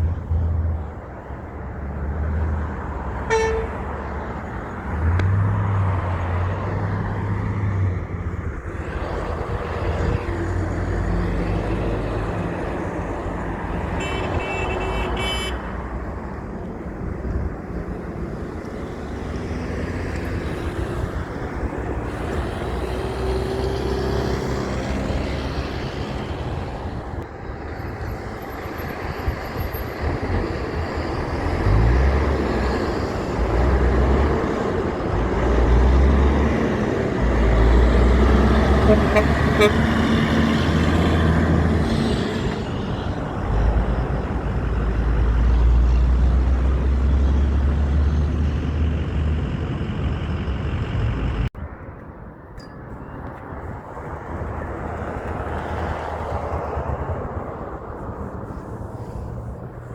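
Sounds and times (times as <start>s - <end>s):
heavy trucks engine rumble: 0.0s - 59.9s
high-pitched horn blasts: 3.2s - 3.9s, 14.0s - 15.7s, 38.8s - 40.1s
short horn toot: 3.3s - 3.8s, 38.8s - 40.0s.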